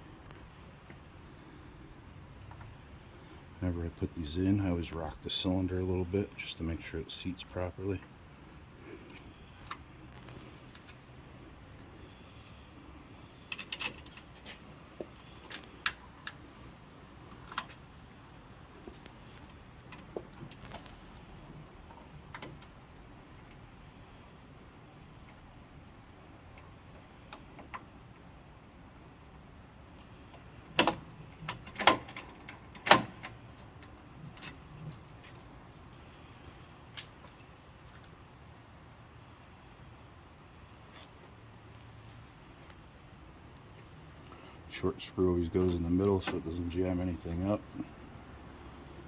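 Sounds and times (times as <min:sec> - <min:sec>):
small metallic clicks and clinks: 0:15.4 - 0:16.7, 0:36.3 - 0:38.3
metallic clicks of door lock: 0:30.8 - 0:33.4.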